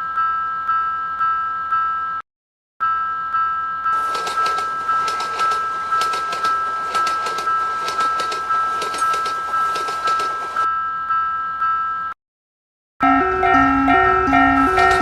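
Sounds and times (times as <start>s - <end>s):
level-crossing alarm bell: 0.0s - 2.2s, 2.8s - 12.2s, 13.0s - 15.0s
passing train clattering: 4.0s - 10.7s, 13.0s - 15.0s.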